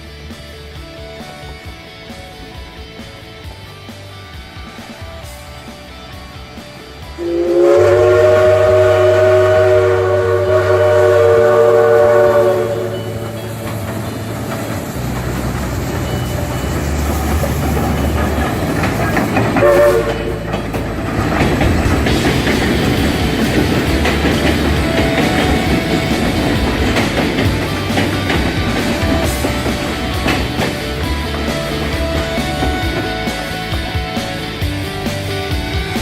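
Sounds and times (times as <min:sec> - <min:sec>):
train cars rumbling: 0:00.0 - 0:36.0
wheels clacking on rails: 0:00.0 - 0:36.0
locomotive whistle blast: 0:07.2 - 0:13.9, 0:15.9 - 0:20.7.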